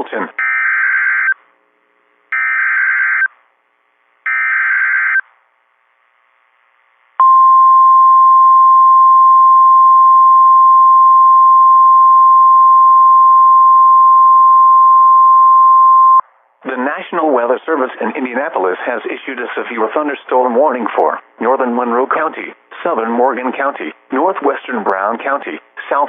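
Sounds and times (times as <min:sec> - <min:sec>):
steady warning alarm tone: 0:02.3 - 0:03.3.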